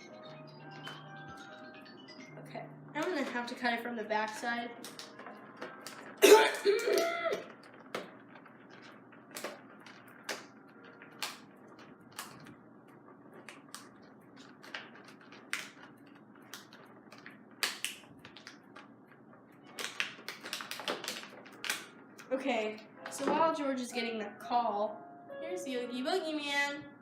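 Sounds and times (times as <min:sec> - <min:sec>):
packaging clicks and crackles: 0:04.2 - 0:23.2.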